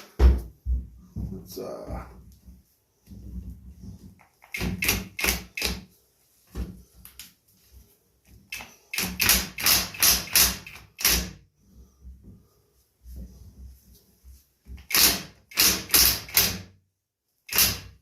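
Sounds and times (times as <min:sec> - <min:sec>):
impact wrench hammering: 0:04.4 - 0:05.8, 0:08.6 - 0:11.3, 0:14.8 - 0:16.6, 0:17.5 - 0:17.9.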